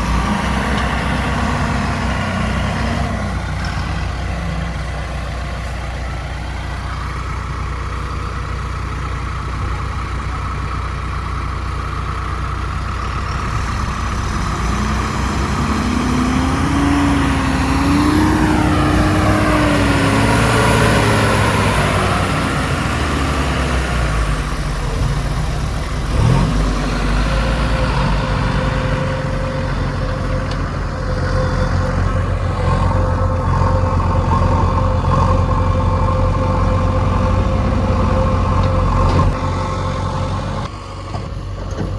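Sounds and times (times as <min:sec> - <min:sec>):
heavy diesel engine running: 0:00.0 - 0:41.9
vehicle passing by: 0:13.5 - 0:41.1.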